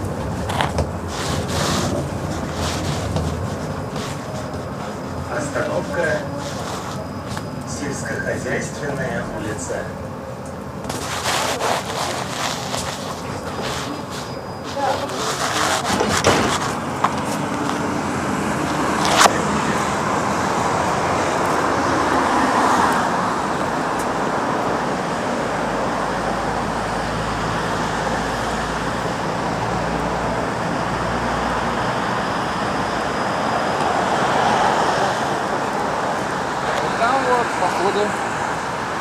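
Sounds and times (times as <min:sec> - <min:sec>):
city traffic noise: 0:00.0 - 0:39.0
low rumble: 0:06.2 - 0:11.2.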